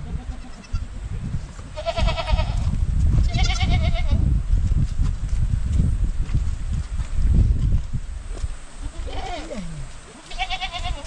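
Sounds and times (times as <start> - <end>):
sheep or goats bleating: 0.0 - 0.9, 1.8 - 4.3, 8.8 - 11.0
steady low rumbling: 0.0 - 11.0.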